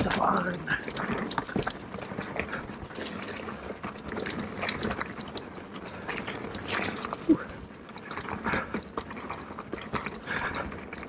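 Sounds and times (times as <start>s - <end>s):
bicycle freewheel clicking: 0.0s - 8.8s
bike rattling and knocking: 0.0s - 11.0s.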